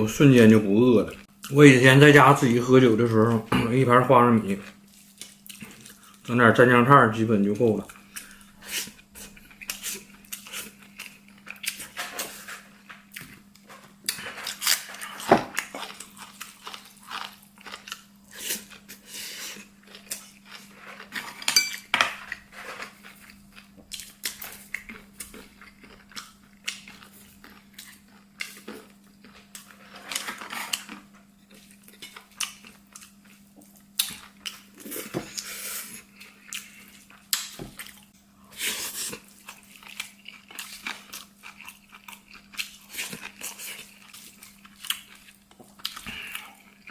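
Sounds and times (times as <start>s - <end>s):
chewing and crunching: 4.5s - 6.3s, 7.8s - 46.9s.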